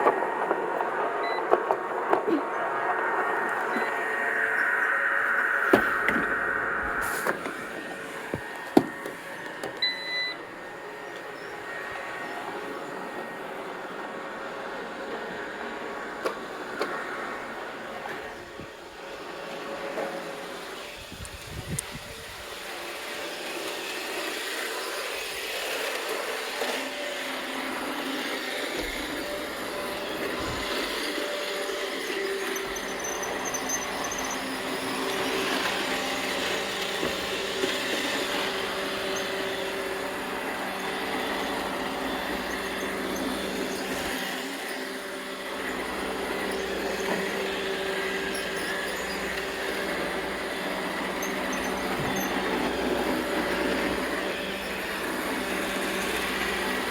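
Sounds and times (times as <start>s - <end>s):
held hums: 0.0s - 12.3s
robot vacuum motor whirring: 0.0s - 56.9s.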